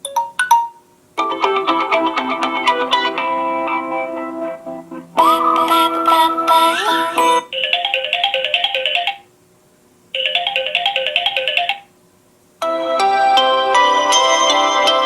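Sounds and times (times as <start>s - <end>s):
fuller ringtone: 0.0s - 9.3s, 10.2s - 11.9s
ringtone tune: 0.0s - 9.3s, 10.2s - 11.9s.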